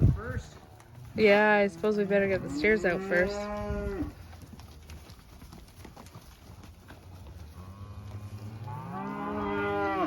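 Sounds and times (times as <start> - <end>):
cow mooing: 1.6 - 4.2, 7.6 - 10.0.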